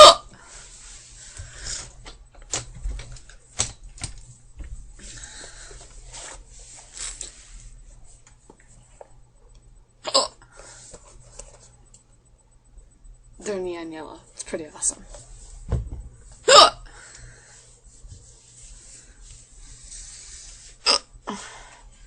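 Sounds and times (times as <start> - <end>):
girl hiccuping: 0.0 - 0.3, 10.0 - 10.4, 16.5 - 16.9.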